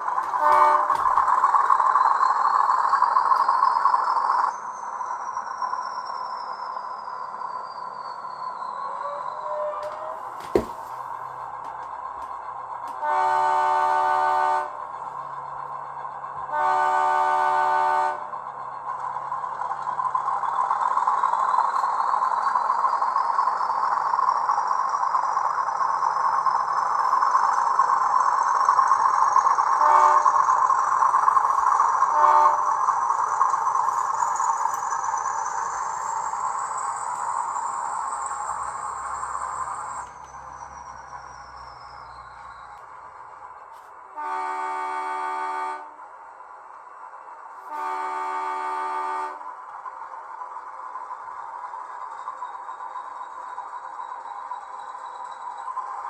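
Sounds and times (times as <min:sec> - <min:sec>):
model locomotive horn: 0:00.0 - 0:01.7, 0:12.9 - 0:15.0, 0:16.5 - 0:18.4, 0:29.4 - 0:34.9, 0:44.1 - 0:46.0, 0:47.6 - 0:49.6
model train engine sound: 0:00.0 - 0:56.0
short horn toots: 0:00.2 - 0:01.2.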